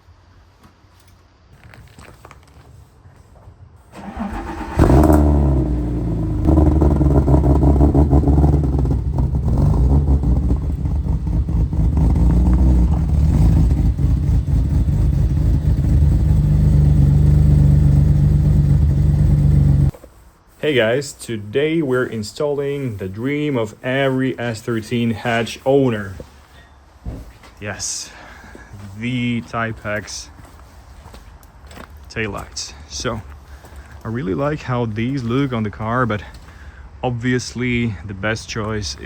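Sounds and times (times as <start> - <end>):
car engine cranking and starting: 3.9 - 19.9
car engine idling: 4.0 - 19.9.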